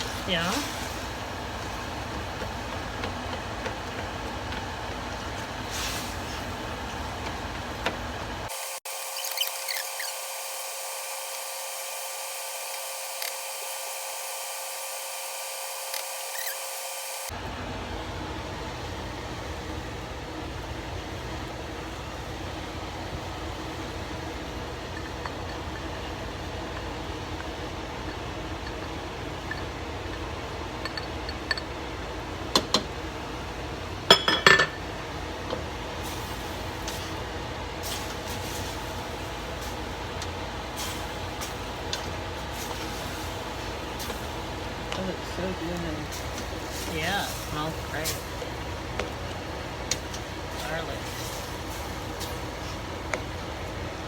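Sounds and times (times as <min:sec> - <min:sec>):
meat sizzling in a pan: 0:36.0 - 0:45.4, 0:46.0 - 0:53.9.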